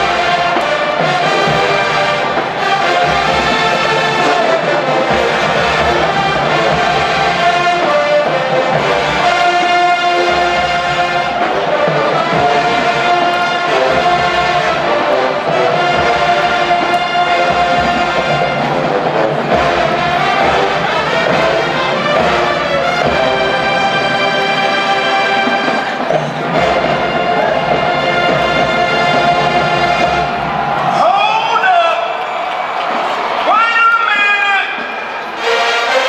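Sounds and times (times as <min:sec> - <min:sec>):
brass held chords: 0:00.0 - 0:31.0, 0:35.3 - 0:36.0
marching band playing: 0:00.0 - 0:36.0.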